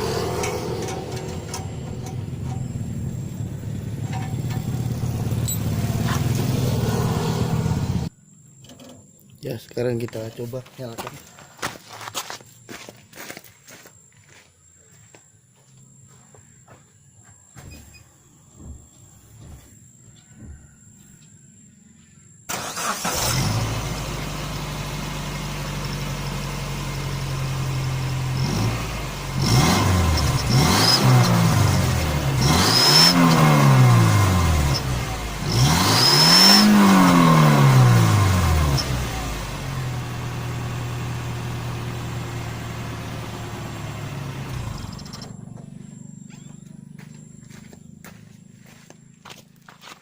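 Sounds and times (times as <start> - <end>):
engine idling and revving: 0.0 - 8.2, 22.5 - 50.0.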